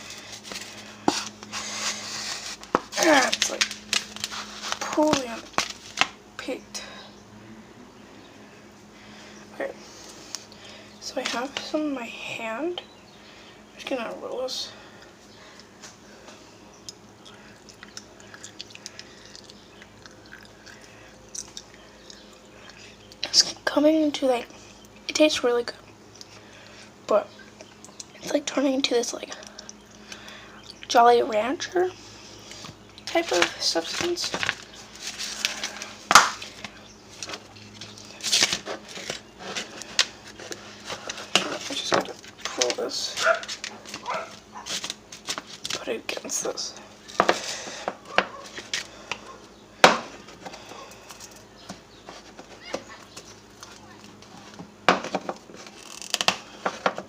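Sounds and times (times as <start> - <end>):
crackly handling noises: 0.0 - 6.5, 15.0 - 23.5, 32.3 - 57.0.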